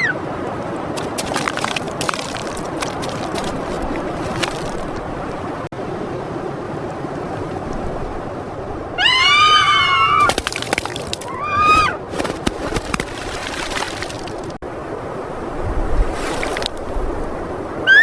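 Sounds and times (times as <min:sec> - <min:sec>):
animal calling: 0:00.0 - 0:00.2, 0:09.0 - 0:10.3.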